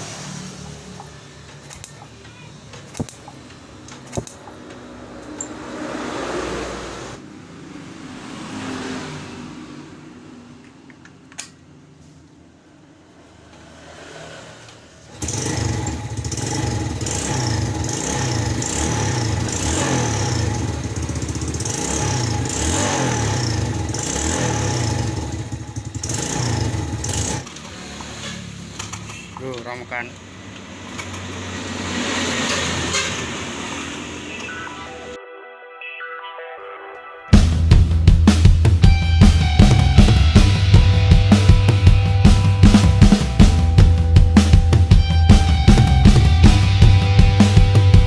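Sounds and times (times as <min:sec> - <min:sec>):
motorcycle engine revving: 0:00.0 - 0:09.8, 0:13.4 - 0:34.4, 0:37.4 - 0:48.0
background noise: 0:00.0 - 0:37.4
sharp clicks: 0:00.6 - 0:05.5.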